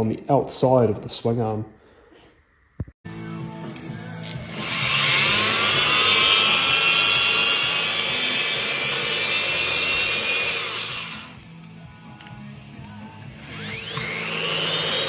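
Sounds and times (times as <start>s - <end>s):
power tool running: 4.2s - 11.5s, 13.3s - 15.0s.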